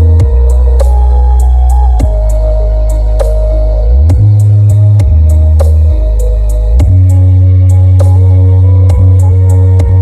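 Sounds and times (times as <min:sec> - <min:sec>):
electronic music: 0:00.0 - 0:10.0
heavy bass notes: 0:00.0 - 0:10.0.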